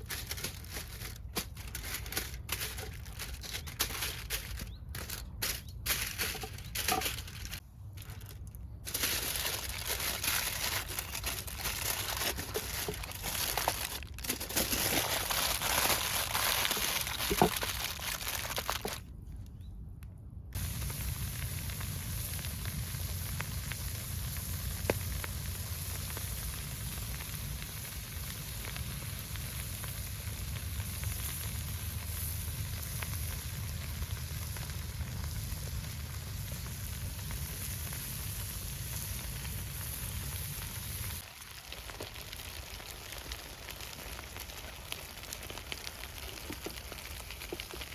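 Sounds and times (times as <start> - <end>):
campfire crackling and popping: 0.0 - 19.0, 20.5 - 47.9
steady rushing hiss: 20.6 - 47.9.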